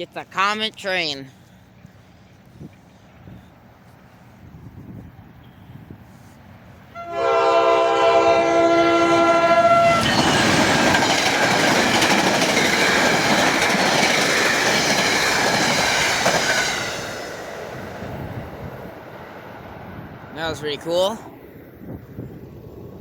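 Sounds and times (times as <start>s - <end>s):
train air horn: 6.9s - 10.2s
train wheels clattering over rails: 10.0s - 17.6s.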